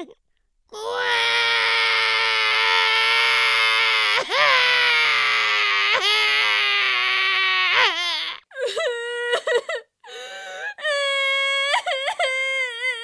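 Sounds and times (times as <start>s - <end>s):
exaggerated comic crying wail: 0.8s - 9.3s.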